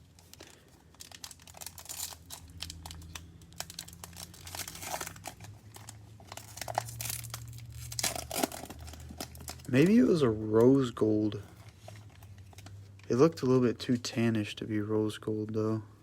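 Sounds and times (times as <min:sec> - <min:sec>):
foil wrapper tearing and crinkling: 0:00.0 - 0:10.8.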